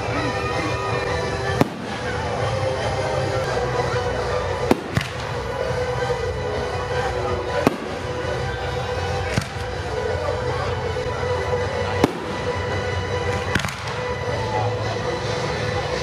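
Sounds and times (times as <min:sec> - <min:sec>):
music playing: 0:00.0 - 0:16.0
fireworks bangs: 0:01.3 - 0:02.8, 0:04.6 - 0:05.6, 0:07.5 - 0:08.5, 0:12.0 - 0:14.2.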